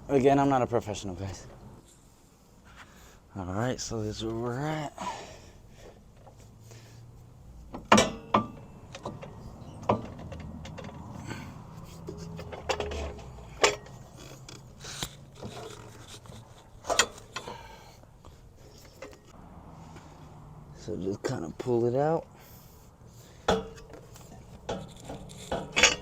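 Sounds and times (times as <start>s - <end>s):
metal clanks and scraping: 7.6s - 20.2s, 23.2s - 26.0s.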